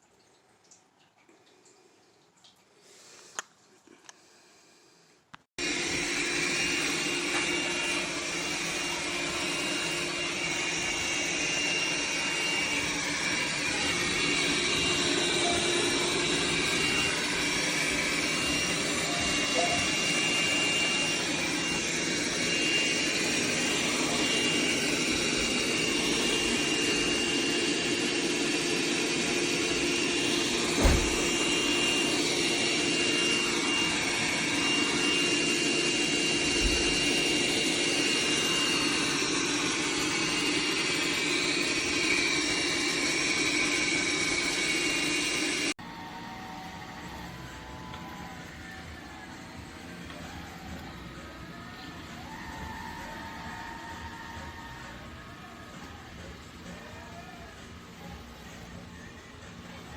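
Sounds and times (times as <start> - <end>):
vacuum suction motor whining: 5.6 - 59.9
low thump: 30.8 - 31.3.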